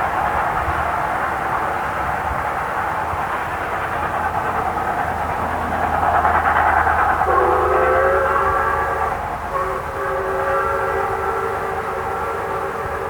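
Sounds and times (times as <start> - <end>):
steam locomotive running: 0.0 - 13.0
steam whistle blowing: 7.2 - 13.0.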